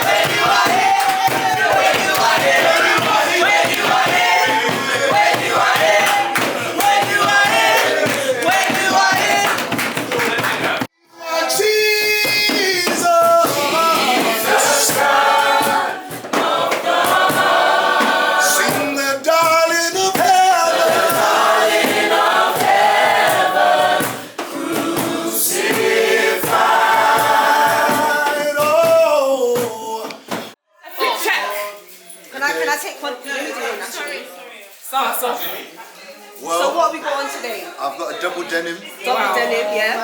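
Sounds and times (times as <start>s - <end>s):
choir singing: 0.0s - 30.3s.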